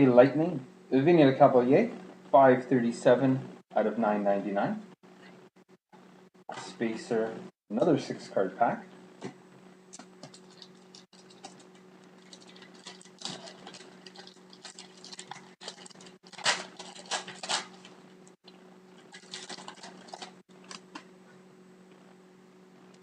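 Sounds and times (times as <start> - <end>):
steady electrical hum: 0.0 - 23.0
card pack wrapper crinkling: 10.0 - 18.0, 19.0 - 21.0.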